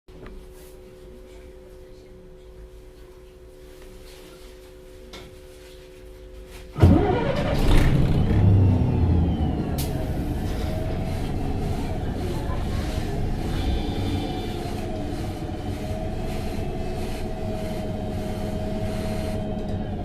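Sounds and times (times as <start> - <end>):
bus engine starting and running: 6.8 - 20.0
bus idling hum: 6.8 - 20.0.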